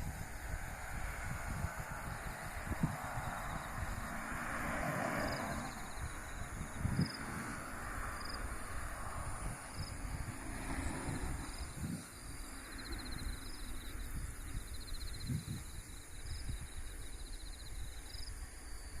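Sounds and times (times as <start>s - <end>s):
insects chirping in pulsed trills: 0.0s - 19.0s
wind rumbling on microphone: 0.0s - 19.0s.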